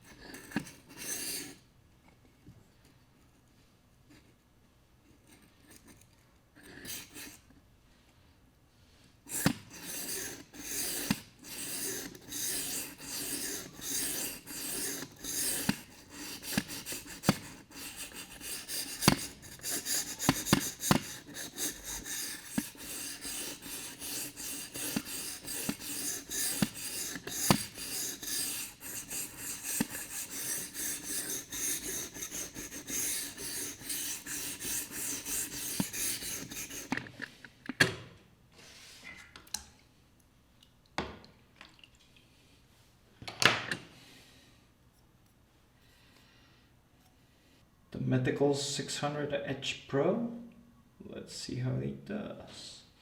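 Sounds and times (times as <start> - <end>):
knife grinding on whetstone: 0.0 - 1.6, 6.6 - 7.4, 9.3 - 37.3.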